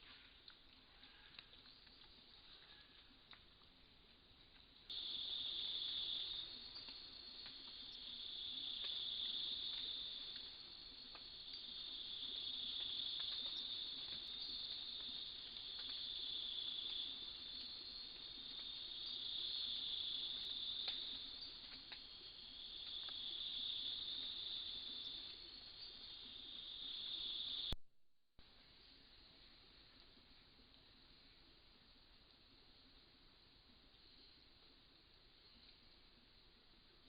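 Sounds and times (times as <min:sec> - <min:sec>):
insects trilling: 0:04.9 - 0:27.8.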